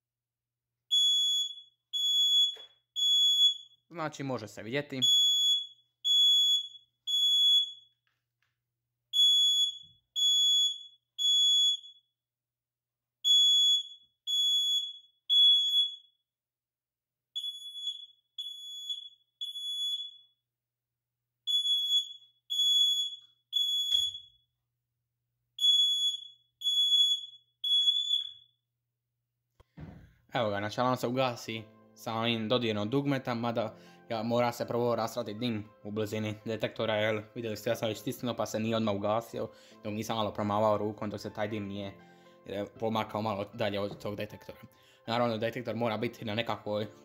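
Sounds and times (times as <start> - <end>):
smoke alarm beeping: 0.9 - 3.8, 5.0 - 8.0, 9.1 - 12.1, 13.2 - 16.2, 17.4 - 20.4, 21.5 - 24.5, 25.6 - 28.6.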